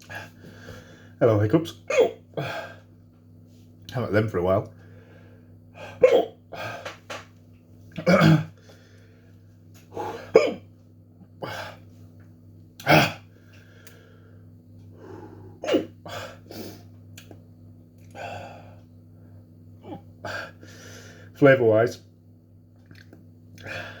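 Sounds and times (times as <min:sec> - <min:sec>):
man hiccuping: 0:01.9 - 0:02.2, 0:06.0 - 0:06.4, 0:08.0 - 0:08.6, 0:10.2 - 0:10.7, 0:12.8 - 0:13.3, 0:15.6 - 0:16.2.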